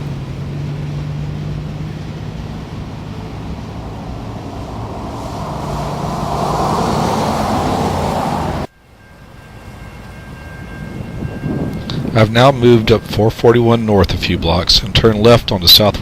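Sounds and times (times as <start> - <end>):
diesel locomotive drone: 0.0 - 15.6.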